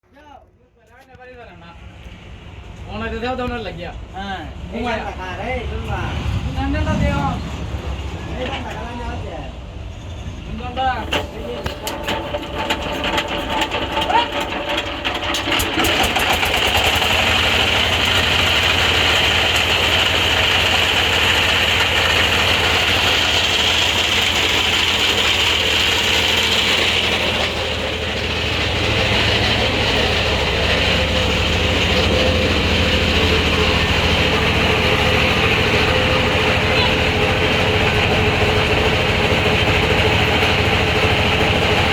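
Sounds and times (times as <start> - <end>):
sawmill saw and motor droning: 10.9 - 41.9.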